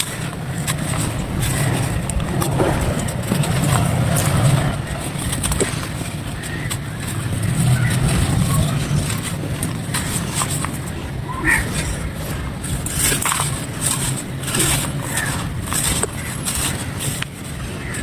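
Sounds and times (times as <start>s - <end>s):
low rumble: 0.0s - 15.8s
clay and sand crumbling: 0.0s - 18.0s.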